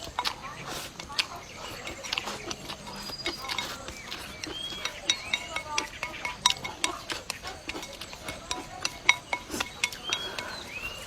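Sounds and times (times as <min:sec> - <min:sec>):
birds chirping: 0:00.0 - 0:11.0
tableware clicking and clinking: 0:03.2 - 0:11.0.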